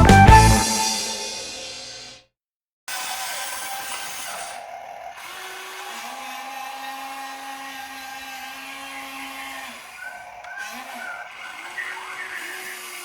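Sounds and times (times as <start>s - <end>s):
small electric motors whining: 2.9s - 13.0s.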